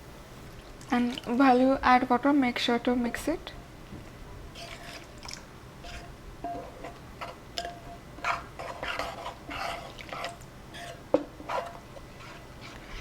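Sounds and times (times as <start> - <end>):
spoon stirring wet batter: 4.6 - 12.5
spoon clinking against bowl: 7.6 - 8.4.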